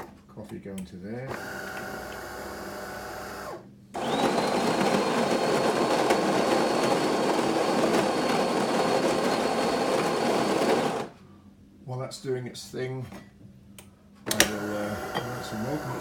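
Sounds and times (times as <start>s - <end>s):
coffee machine pump running: 1.3s - 11.1s, 14.3s - 16.0s
coffee bean grinder: 1.4s - 3.4s, 4.0s - 11.1s, 14.4s - 16.0s.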